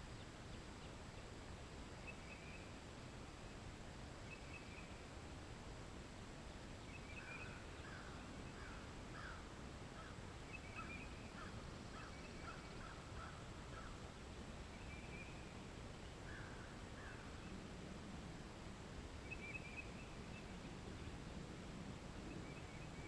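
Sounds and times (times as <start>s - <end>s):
low background hiss: 0.0s - 23.0s
birds singing: 6.8s - 9.4s, 10.0s - 14.0s, 22.2s - 23.0s.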